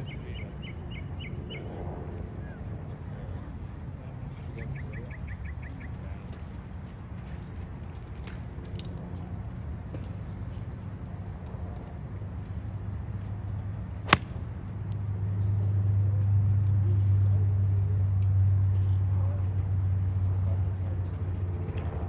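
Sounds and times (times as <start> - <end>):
golf club striking ball: 14.0 - 14.5.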